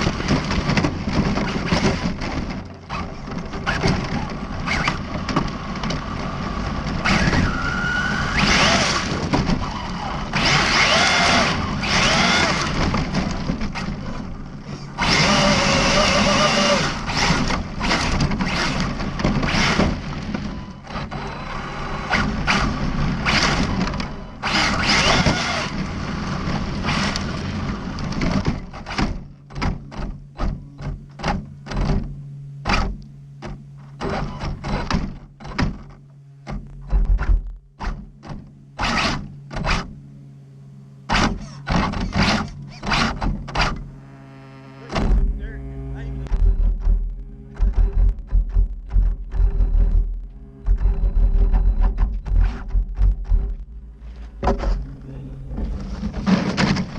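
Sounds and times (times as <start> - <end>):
rc car on gravel: 0.0 - 29.1, 38.8 - 40.0
low steady hum: 0.0 - 56.9
sharp knocks and thuds: 28.0 - 38.6, 44.9 - 45.4, 46.3 - 56.9.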